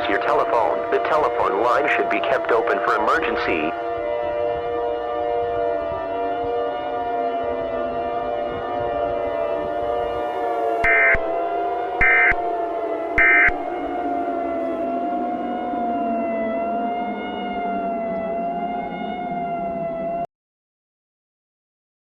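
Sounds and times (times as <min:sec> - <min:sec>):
wavering siren-like drone: 0:00.0 - 0:20.3
digital data bursts: 0:10.8 - 0:11.2.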